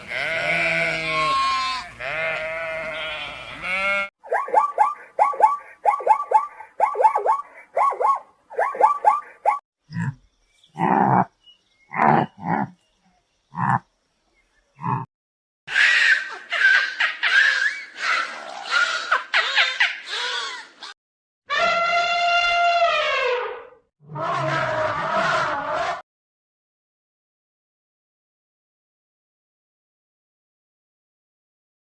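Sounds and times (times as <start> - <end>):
animal bleating: 0.0 - 4.1
harsh squawking calls: 3.0 - 9.6
low animal calls: 4.3 - 10.2.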